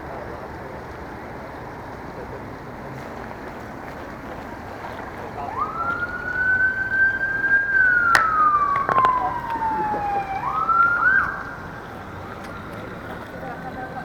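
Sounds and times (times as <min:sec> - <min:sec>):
emergency siren wailing: 0:01.5 - 0:14.0
knocks: 0:08.1 - 0:09.7.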